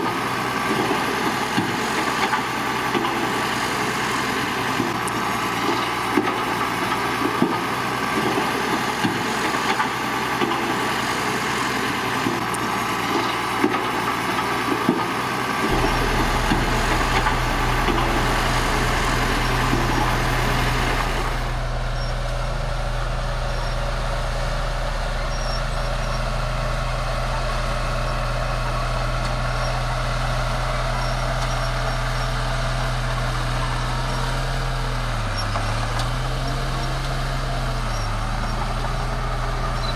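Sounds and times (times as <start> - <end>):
heavy diesel machinery running: 0.0 - 39.9
steady low hum: 15.7 - 22.6.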